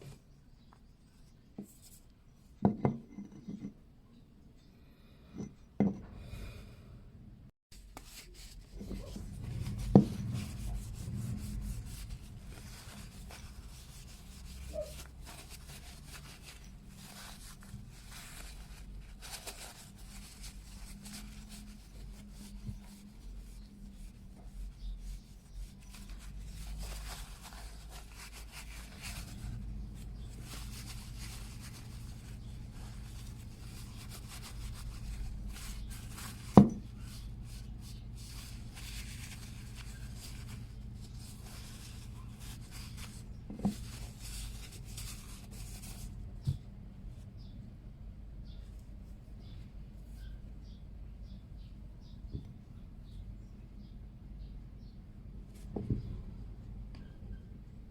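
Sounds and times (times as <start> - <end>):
hands rubbing and scraping yoyo: 7.8 - 46.2.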